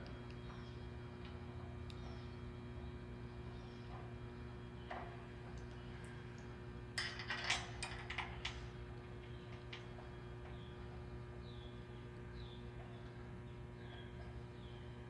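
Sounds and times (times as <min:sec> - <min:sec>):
steady electrical hum: 0:00.0 - 0:15.0
metallic clicks and clatter: 0:07.0 - 0:10.1.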